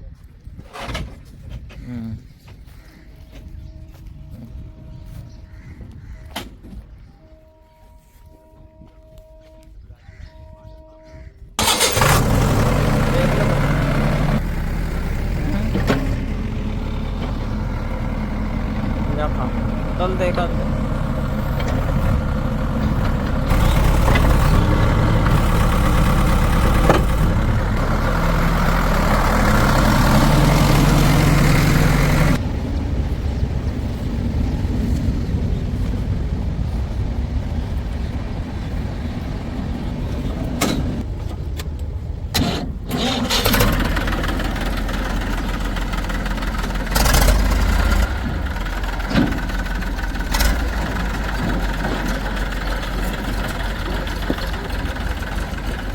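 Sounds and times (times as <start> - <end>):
diesel engines revving: 11.6 - 55.9.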